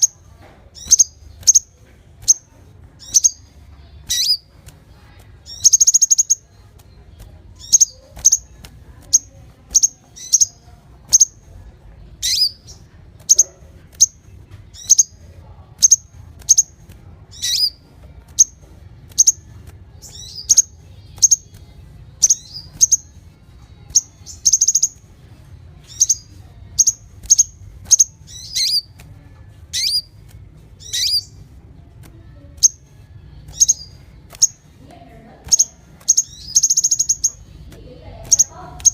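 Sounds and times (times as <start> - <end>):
songbird chirping: 0.0 - 38.9
bird trill: 0.8 - 4.5, 5.4 - 6.6, 7.5 - 11.4, 12.2 - 21.6, 22.2 - 25.1, 25.8 - 29.0, 29.7 - 30.2, 30.8 - 31.5, 32.6 - 34.8, 35.4 - 37.6, 38.2 - 38.9.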